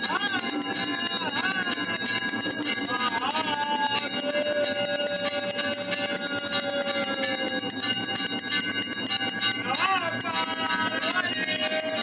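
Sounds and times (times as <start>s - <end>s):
temple bells ringing: 0.0s - 12.0s
long held wavering note: 2.8s - 12.0s.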